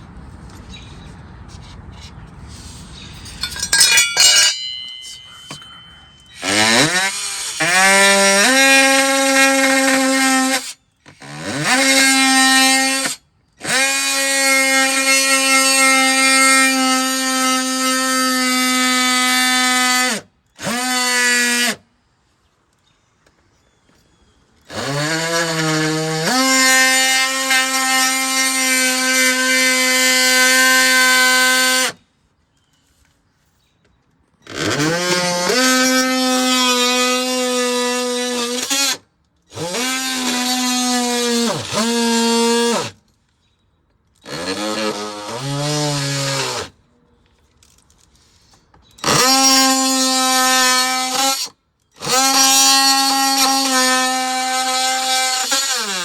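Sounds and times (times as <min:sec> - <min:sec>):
power tool cutting plastic: 0:04.5 - 0:21.9, 0:24.7 - 0:32.0, 0:34.4 - 0:43.0, 0:44.2 - 0:46.8, 0:49.0 - 0:56.0.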